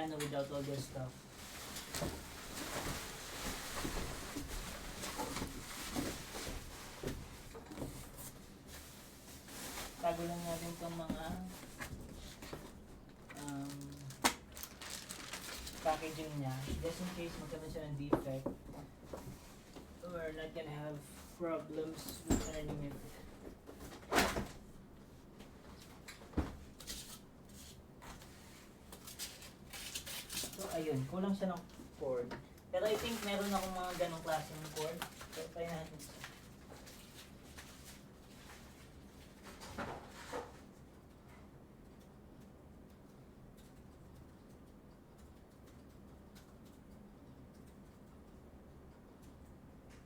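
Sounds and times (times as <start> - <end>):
packaging rustling: 11.4 - 17.7, 28.9 - 31.0, 32.8 - 40.3.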